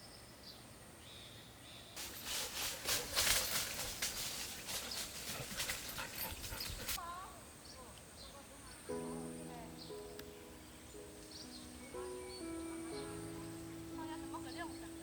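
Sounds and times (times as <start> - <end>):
birds chirping: 0.0 - 15.0
rice stalks rustling: 2.0 - 7.0.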